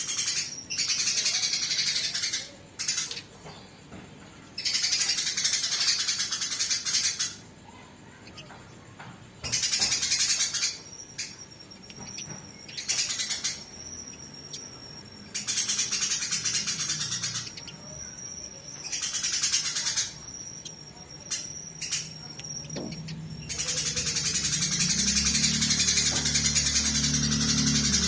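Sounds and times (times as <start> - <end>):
sparrows chattering: 0.0 - 28.0
thin high tone: 9.8 - 28.0.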